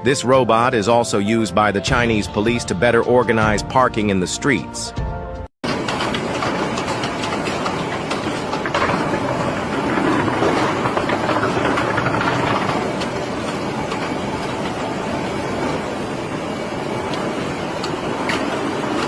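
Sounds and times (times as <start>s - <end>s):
mechanical running noise: 5.7s - 19.0s.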